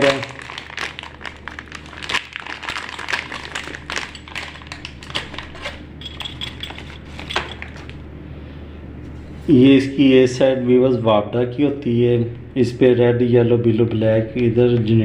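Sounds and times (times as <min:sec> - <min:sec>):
steady low hum: 0:00.0 - 0:15.0
small hard clicks and clinks: 0:03.6 - 0:08.0.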